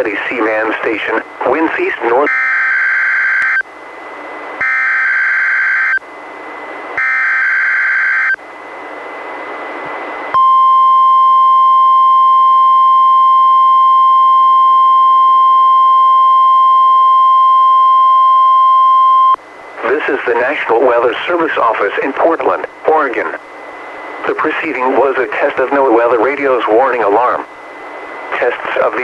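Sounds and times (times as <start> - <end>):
radio static hiss: 0.0 - 2.4, 19.4 - 29.0
steady warning alarm tone: 2.2 - 3.7, 4.6 - 6.0, 7.0 - 8.4.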